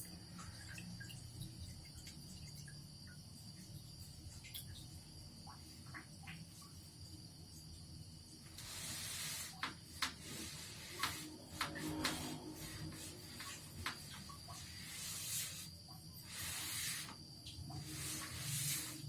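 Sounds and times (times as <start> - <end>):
steady hiss: 5.1 - 19.0.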